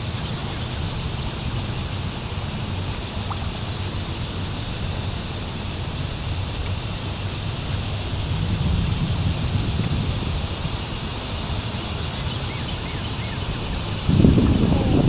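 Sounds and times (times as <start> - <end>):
water: 0.0 - 15.0
wind on microphone: 0.0 - 15.0.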